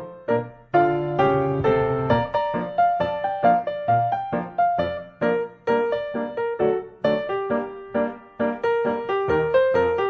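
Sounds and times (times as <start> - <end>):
piano notes in steady rhythm: 0.0 - 10.0.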